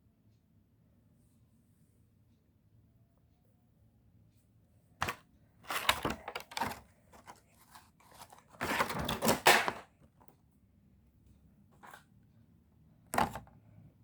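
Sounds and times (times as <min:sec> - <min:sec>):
packaging tearing and crinkling: 0:05.7 - 0:09.8.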